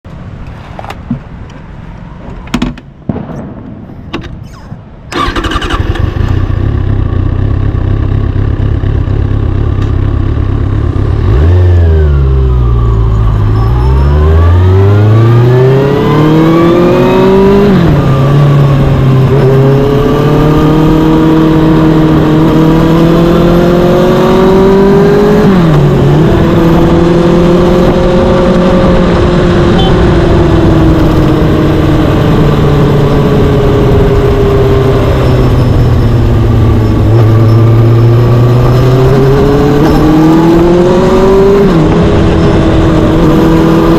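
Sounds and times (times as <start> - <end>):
motorcycle engine running loudly: 5.2 - 12.7.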